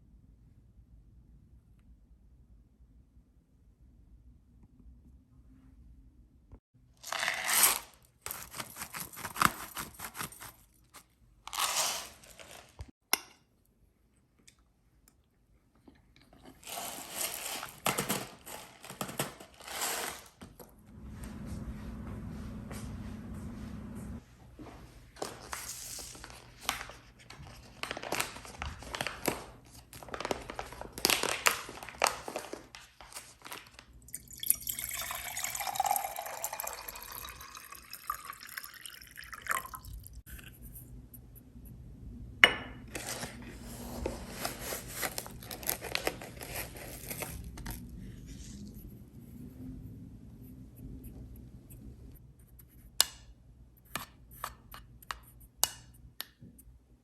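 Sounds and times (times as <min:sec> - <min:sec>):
liquid pouring into glass: 0:34.1 - 0:40.2.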